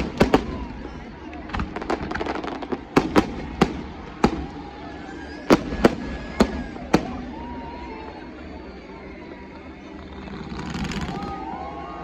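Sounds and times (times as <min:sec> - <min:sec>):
fireworks bangs: 0:00.0 - 0:07.6, 0:10.3 - 0:11.5
outdoor background noise: 0:00.0 - 0:12.0.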